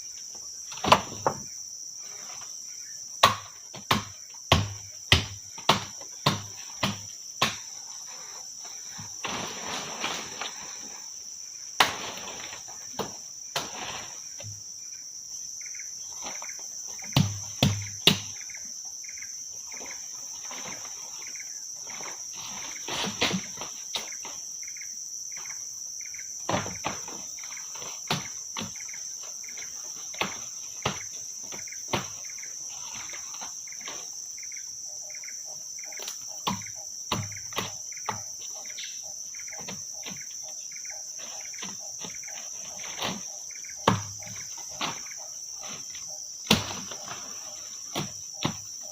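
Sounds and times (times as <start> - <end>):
insect chorus: 0.0 - 48.9
short insect chirps: 0.0 - 48.9
sharp knocks and thuds: 0.7 - 1.6, 3.2 - 7.8, 16.2 - 18.5, 26.4 - 29.0, 29.6 - 32.4, 36.4 - 38.5, 41.5 - 47.2, 47.8 - 48.9.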